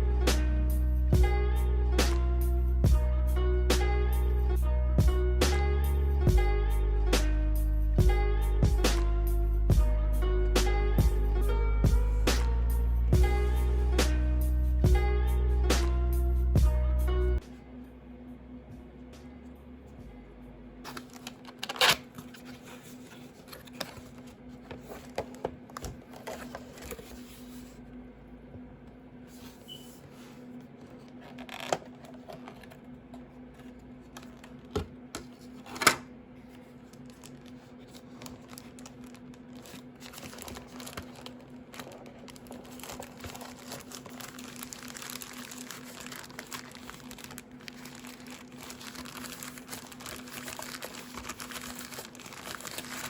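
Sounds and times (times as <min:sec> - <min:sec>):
wrapping crinkling: 0:31.0 - 0:32.7, 0:36.5 - 0:53.0.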